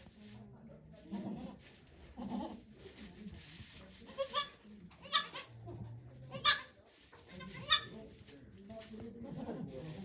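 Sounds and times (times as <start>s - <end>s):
goat bleating: 4.2s - 5.6s.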